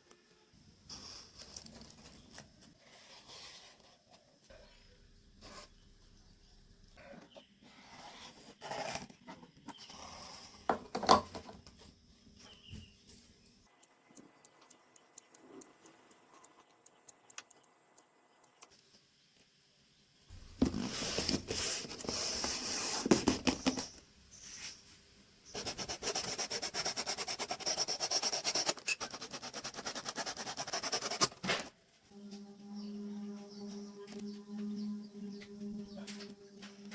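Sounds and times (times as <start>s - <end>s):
hands rubbing cardboard: 20.5s - 24.0s, 25.6s - 31.4s
rapid scraping on cardboard: 25.6s - 31.4s.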